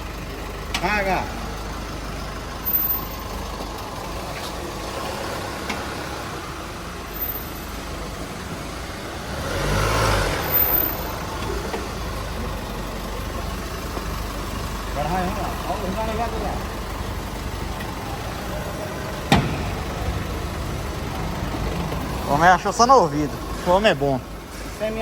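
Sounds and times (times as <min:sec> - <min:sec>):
vehicle engine idling: 0:00.0 - 0:25.0.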